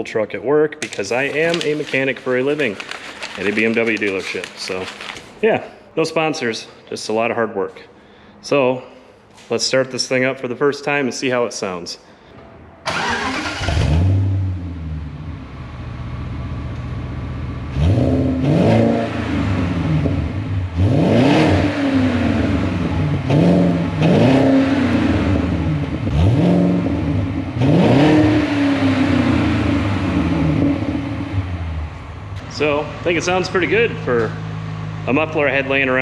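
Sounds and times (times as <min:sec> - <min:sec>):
car engine starting and revving: 0:12.9 - 0:36.0.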